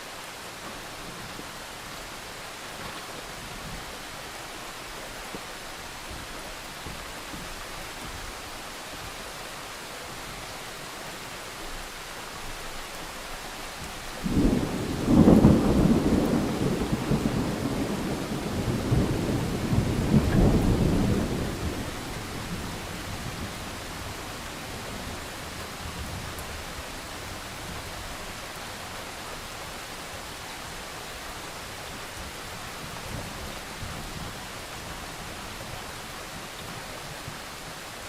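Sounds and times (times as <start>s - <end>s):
rain hissing: 0.0s - 38.0s
thunder rumbling: 14.2s - 26.5s.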